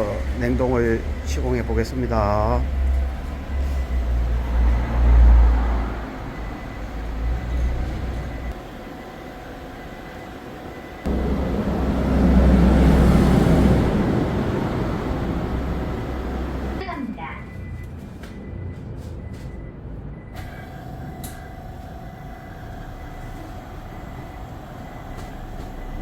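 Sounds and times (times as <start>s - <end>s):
low mechanical running noise: 6.2s - 16.8s, 17.7s - 26.0s.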